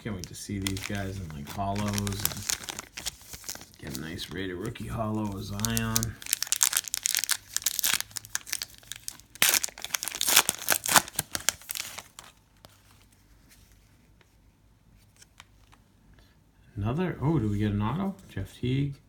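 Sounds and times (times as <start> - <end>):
wrapper tearing and crinkling: 0.0 - 13.0.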